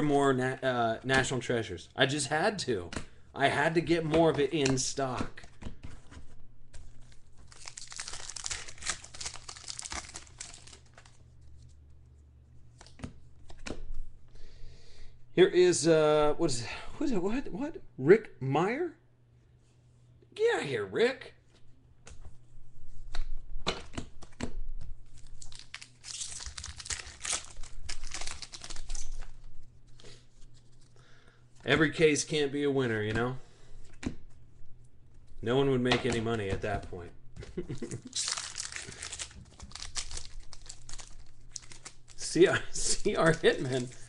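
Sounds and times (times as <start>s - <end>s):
wrapper tearing and crinkling: 6.9s - 11.2s, 25.0s - 29.4s, 37.7s - 44.0s.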